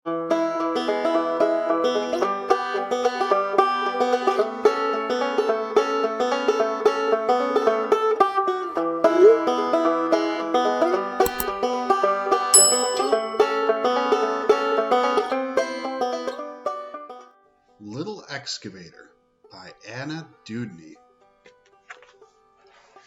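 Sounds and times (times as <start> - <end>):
plucked string instrumental music: 0.1 - 17.3
sharp click: 11.2 - 11.6.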